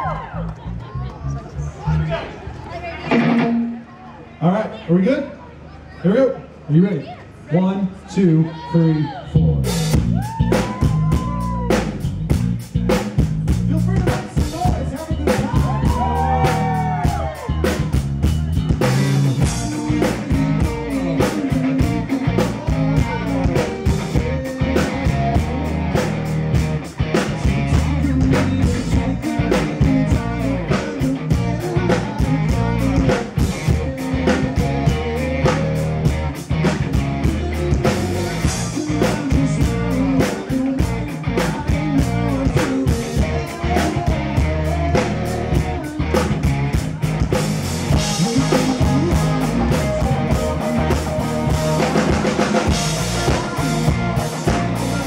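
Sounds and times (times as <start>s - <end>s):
electric guitar: 2.9s - 4.0s, 15.2s - 55.0s
drum kit beat: 3.1s - 3.8s, 9.4s - 55.0s
person singing: 18.8s - 26.2s, 27.4s - 36.2s, 36.8s - 46.8s, 47.9s - 55.0s.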